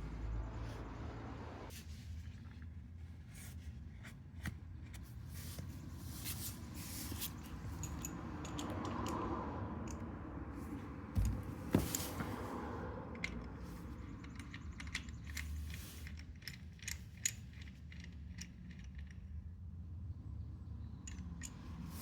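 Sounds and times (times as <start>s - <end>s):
metal tools clinking: 7.3s - 9.2s
dull knock: 11.2s - 11.9s.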